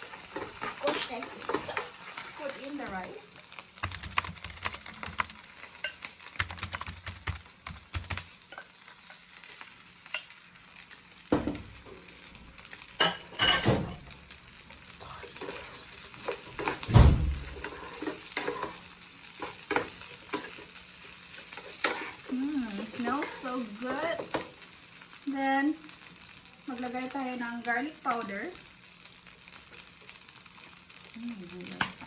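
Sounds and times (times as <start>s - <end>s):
rice sizzling in a pan: 0.0s - 32.0s
spatula scraping a pan: 17.5s - 24.5s.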